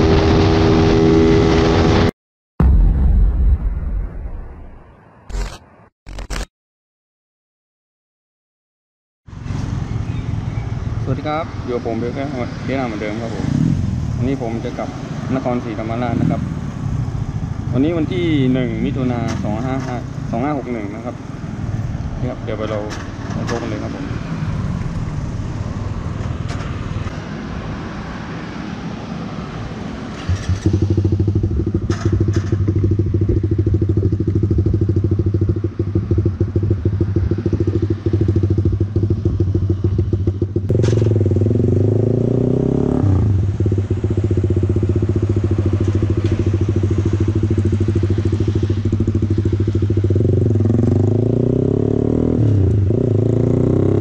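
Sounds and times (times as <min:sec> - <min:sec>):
motorcycle engine droning: 0:30.2 - 0:54.0.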